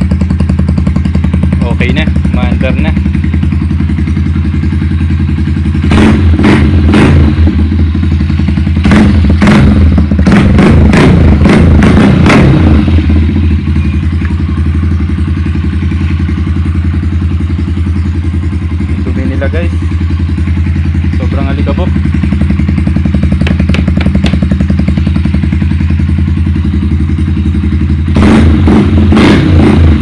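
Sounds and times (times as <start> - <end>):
motorcycle engine running: 0.0 - 30.0
motorcycle throttle blips: 0.0 - 30.0.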